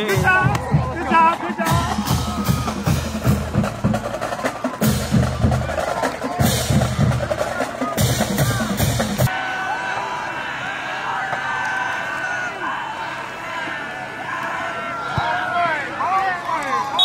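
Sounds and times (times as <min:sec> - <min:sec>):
drumline snare and bass drums: 0:00.0 - 0:09.3
crowd chatter: 0:00.0 - 0:17.0.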